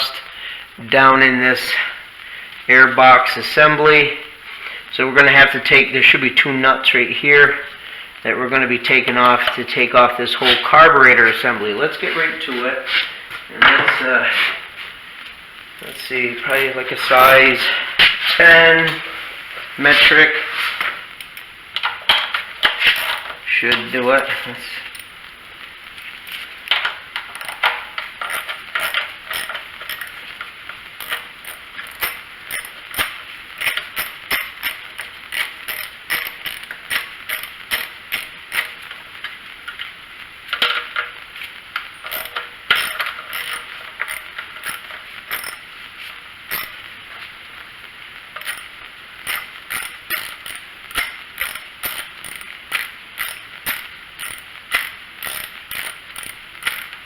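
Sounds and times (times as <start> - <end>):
ratchet wrench clicking: 21.2 - 21.9, 22.9 - 23.4, 24.9 - 25.2, 26.3 - 30.4, 31.0 - 38.9, 42.0 - 45.7, 46.5 - 46.8, 48.4 - 57.0.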